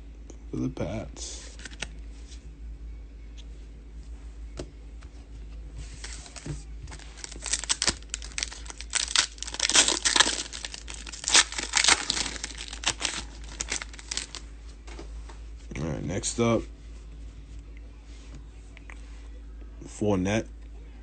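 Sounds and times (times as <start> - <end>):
foil wrapper tearing and crinkling: 6.3 - 14.4.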